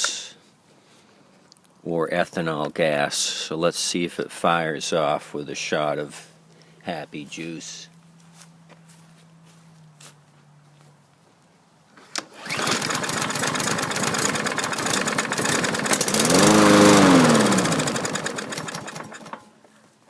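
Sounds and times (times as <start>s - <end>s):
mower engine running: 12.2s - 19.6s.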